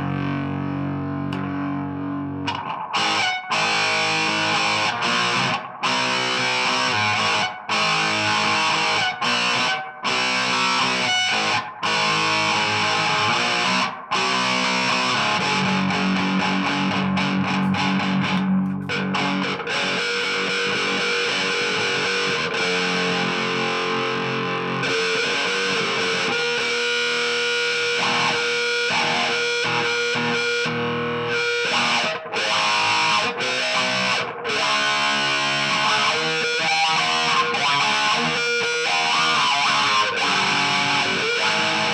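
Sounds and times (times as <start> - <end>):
distorted electric guitar: 0.0 - 41.9.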